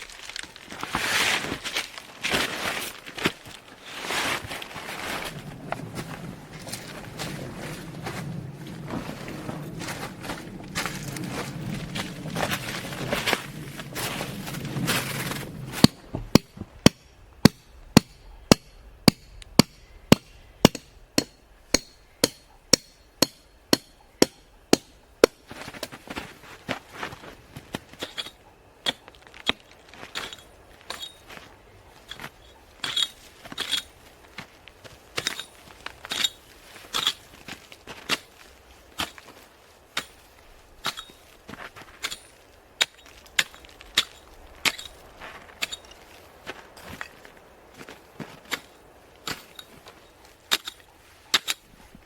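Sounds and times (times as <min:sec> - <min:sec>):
knocks and crunches: 0:00.0 - 0:18.2
tool striking hard: 0:15.8 - 0:25.4.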